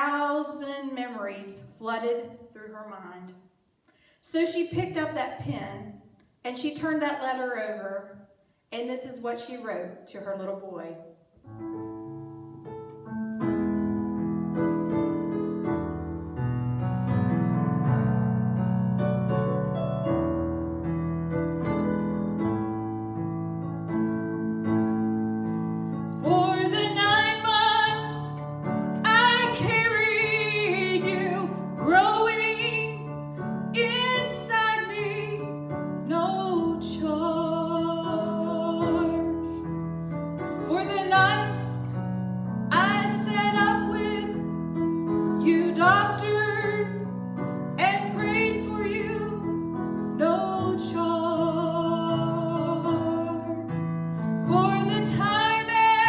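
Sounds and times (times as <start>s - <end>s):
piano: 11.2s - 56.0s
woman singing with vibrato: 26.2s - 33.0s, 33.7s - 35.4s, 42.7s - 44.4s, 50.2s - 53.6s, 54.5s - 56.0s.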